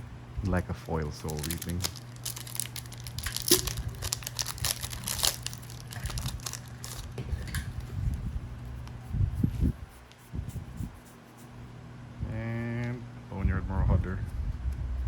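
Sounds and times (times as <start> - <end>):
wrappers crinkling and tearing: 0.6 - 7.5.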